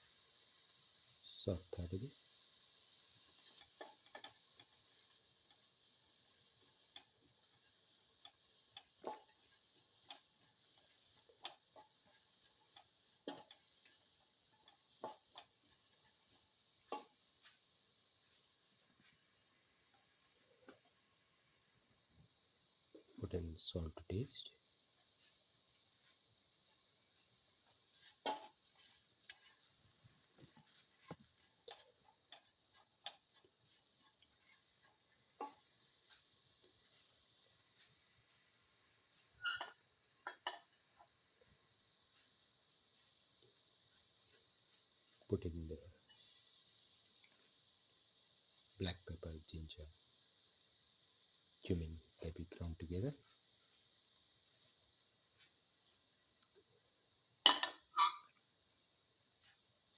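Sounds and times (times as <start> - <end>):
faint steady hiss: 0.0 - 59.9
spatula tapping and scraping a pan: 2.1 - 21.2, 24.2 - 38.0, 39.1 - 45.3, 46.0 - 48.7, 53.2 - 58.6, 59.3 - 59.9.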